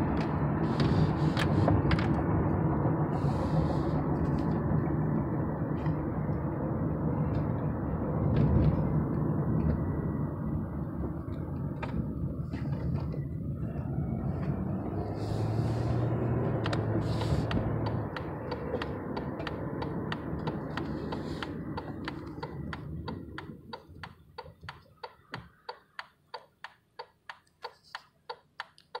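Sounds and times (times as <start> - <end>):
car engine and road rumble: 0.0 - 29.0
even ticking: 16.6 - 29.0.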